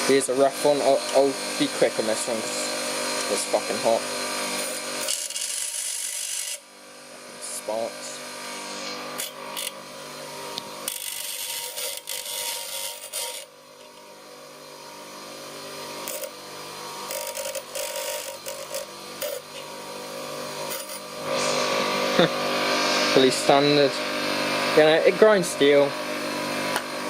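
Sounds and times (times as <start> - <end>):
bench grinder motor hum: 0.0 - 27.0
steel grinding rasp: 0.6 - 6.7, 8.6 - 9.8, 10.8 - 13.5, 16.0 - 16.4, 17.0 - 19.7, 20.5 - 22.0.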